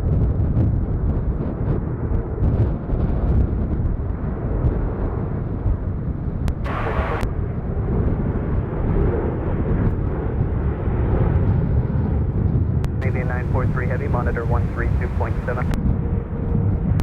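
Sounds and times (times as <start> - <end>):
jet engines rumbling: 6.7 - 7.2, 13.0 - 15.8.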